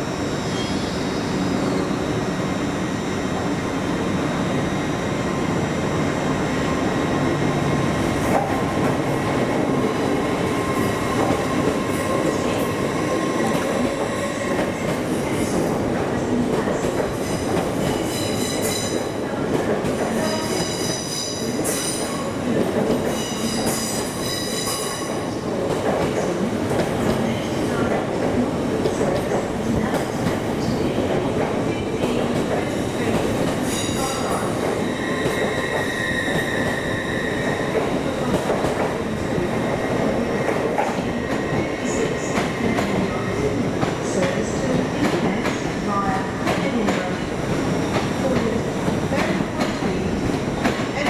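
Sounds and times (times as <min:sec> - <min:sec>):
high-pitched train squeals: 0:00.3 - 0:02.0, 0:20.2 - 0:22.2, 0:23.1 - 0:25.2, 0:33.6 - 0:38.5
train rumble: 0:25.2 - 0:51.0.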